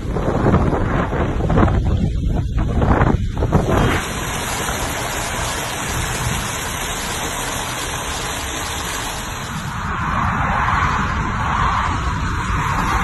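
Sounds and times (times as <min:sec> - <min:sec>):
heavy rain: 0:03.2 - 0:11.4.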